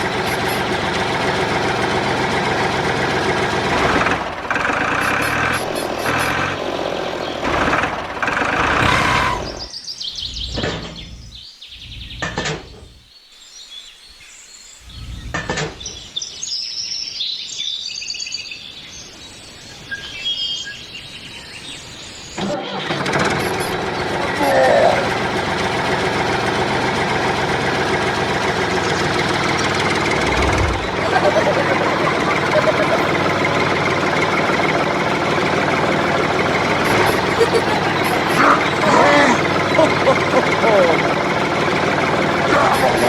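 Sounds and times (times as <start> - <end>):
small engine running: 0.0 - 13.0, 22.3 - 43.0
birds chirping faintly: 9.0 - 22.4, 23.4 - 43.0.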